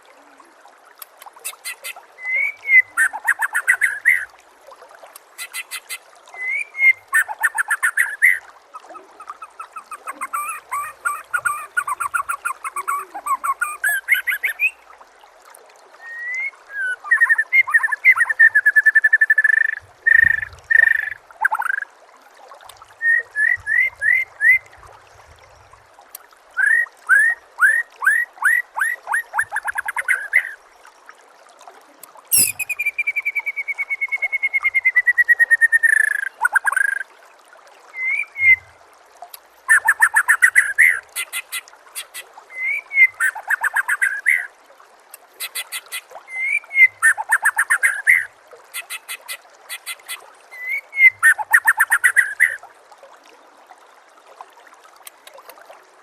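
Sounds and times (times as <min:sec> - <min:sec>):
songbird singing rapid trills: 0:32.3 - 0:37.0.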